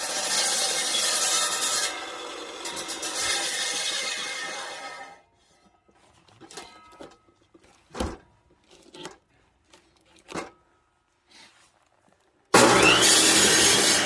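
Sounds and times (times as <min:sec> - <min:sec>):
sawing: 0:00.0 - 0:05.2, 0:12.5 - 0:14.0.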